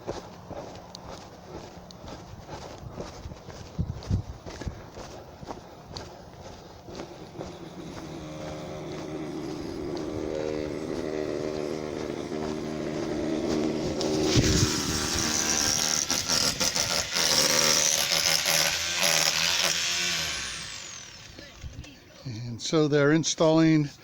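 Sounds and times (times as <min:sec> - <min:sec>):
motor humming: 0:05.5 - 0:22.0
power tool whirring: 0:06.0 - 0:22.2.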